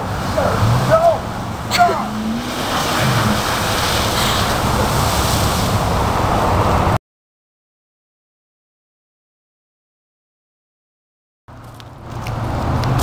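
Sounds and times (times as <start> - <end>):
traffic: 0.0 - 7.0, 11.5 - 13.0.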